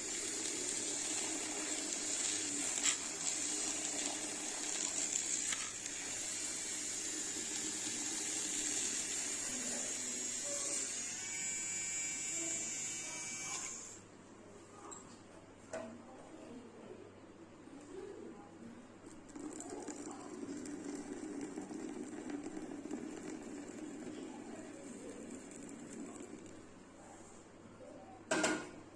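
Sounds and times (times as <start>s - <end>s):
electric frother whirring: 0.0s - 14.0s, 19.3s - 26.7s.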